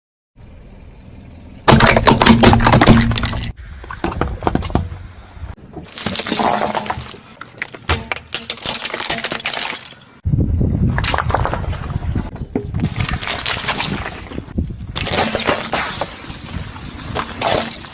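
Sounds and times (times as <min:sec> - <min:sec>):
plastic bottles crushed by tyres: 0:01.7 - 0:04.8, 0:05.8 - 0:10.2, 0:12.7 - 0:17.9.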